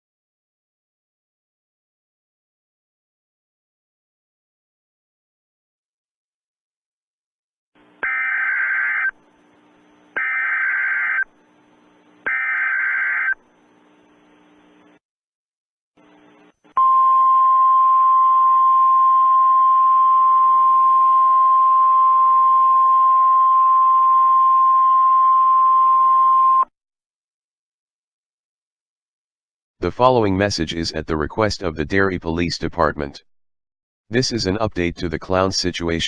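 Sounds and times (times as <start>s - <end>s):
screeching digital data tones: 8.0s - 9.2s, 10.2s - 11.3s, 12.3s - 13.4s.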